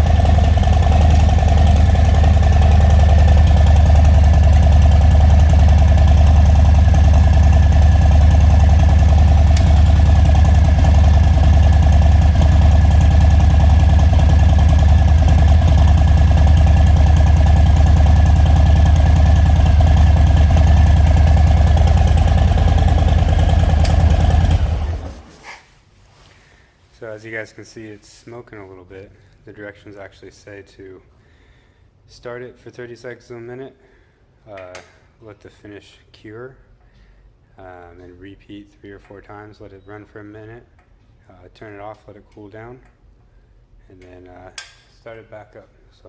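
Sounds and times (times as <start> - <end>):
motorcycle engine idling: 0.0 - 25.4.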